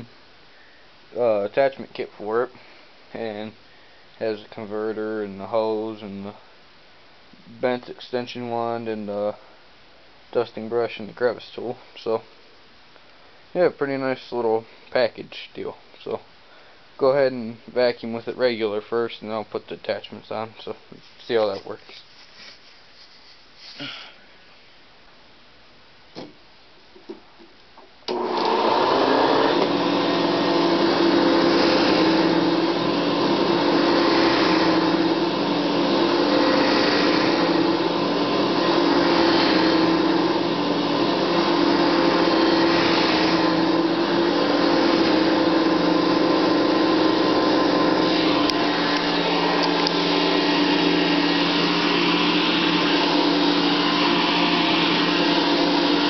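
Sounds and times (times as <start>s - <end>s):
upright vacuum cleaner running: 28.1s - 56.0s.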